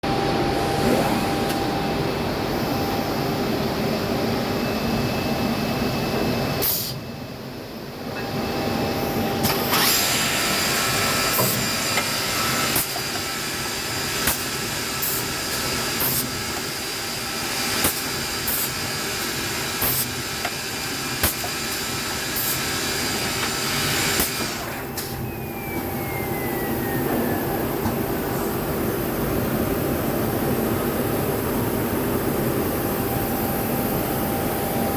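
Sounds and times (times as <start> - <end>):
drilling machine whining: 8.3 - 28.2.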